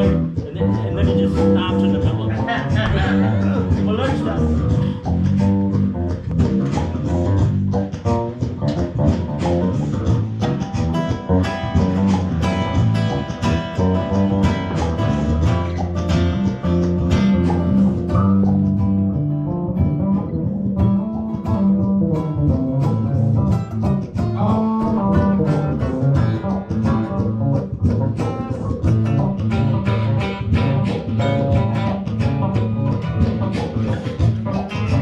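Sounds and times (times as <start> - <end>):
bass line: 0.0 - 35.0
guitar strummed and picked: 0.0 - 35.0.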